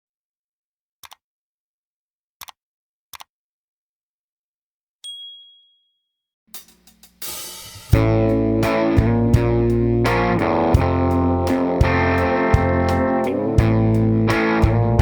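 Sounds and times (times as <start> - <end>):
high-pitched ding: 5.0 - 6.0.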